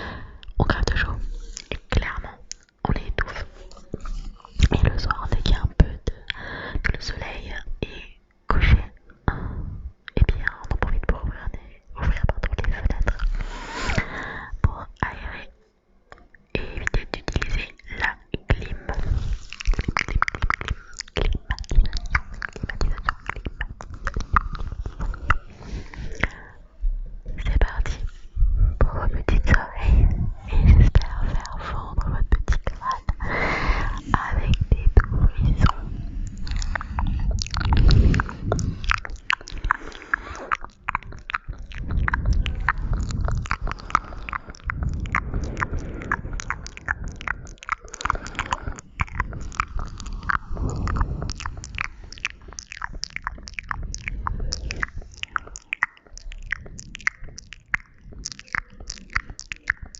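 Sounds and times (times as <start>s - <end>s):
wet lip and tongue clicks: 0.4s - 9.1s, 10.0s - 15.4s, 16.1s - 26.6s, 27.3s - 28.2s, 28.8s - 59.9s
low rumble: 21.2s - 59.9s.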